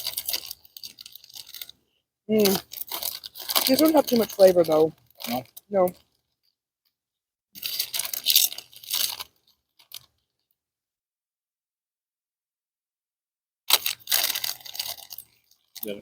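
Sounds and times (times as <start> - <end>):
person chewing crunchy snack: 0.0 - 1.8, 2.5 - 4.3, 7.6 - 10.1, 13.7 - 16.0.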